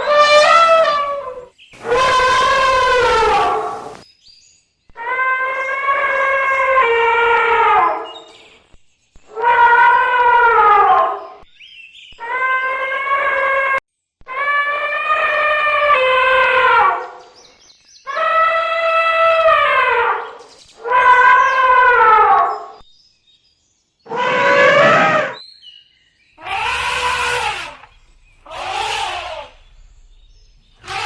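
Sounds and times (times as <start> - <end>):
elephant trumpeting: 0.0 - 4.0, 18.1 - 22.6, 24.1 - 25.4, 26.4 - 31.0.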